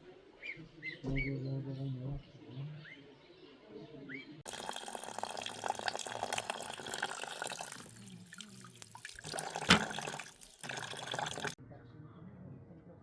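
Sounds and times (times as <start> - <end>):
water drips and spatters: 4.5 - 11.6
water running and splashing: 4.5 - 11.6.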